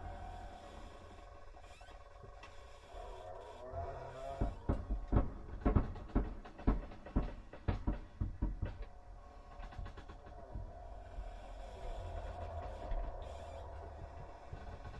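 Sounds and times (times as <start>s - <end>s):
faint eerie drone: 0.0s - 14.9s
heavy knocking: 4.4s - 10.8s.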